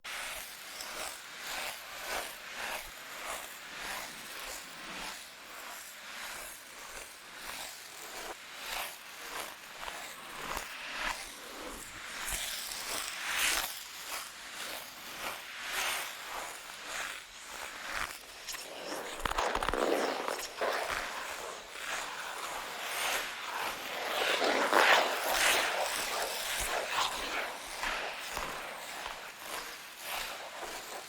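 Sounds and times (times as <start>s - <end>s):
ice skate blades scraping ice: 15.0s - 31.0s.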